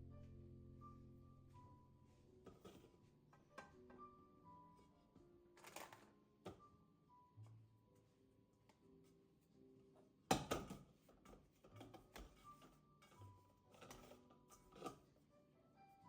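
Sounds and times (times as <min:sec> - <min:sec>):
soft background music: 0:00.0 - 0:16.0.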